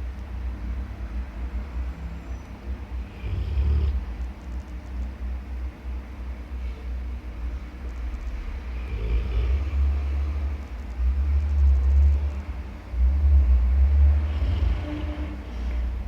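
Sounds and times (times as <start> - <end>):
dog snoring: 3.1 - 4.1, 8.6 - 10.3, 14.1 - 15.3.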